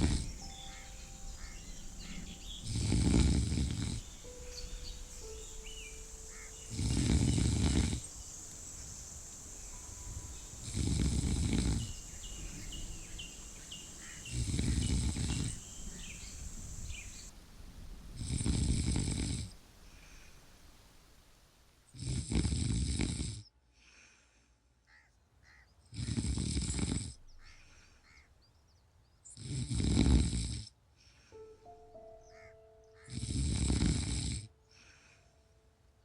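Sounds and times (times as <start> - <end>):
person snoring: 0.0 - 0.5, 2.6 - 4.1, 6.7 - 8.1, 10.6 - 12.0, 14.3 - 15.6, 18.2 - 19.5, 22.0 - 23.4, 26.0 - 27.2, 29.4 - 30.7, 33.1 - 35.1.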